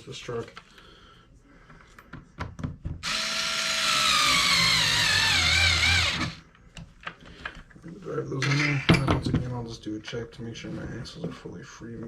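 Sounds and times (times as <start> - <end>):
power screwdriver whining: 3.0 - 6.4.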